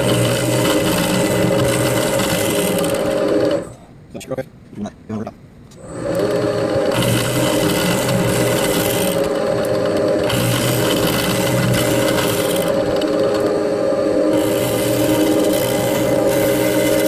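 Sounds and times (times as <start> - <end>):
cutter rasping through plastic: 0.0 - 3.7, 5.8 - 13.5, 14.3 - 17.0
milling machine motor hum: 0.0 - 3.8, 5.8 - 17.0.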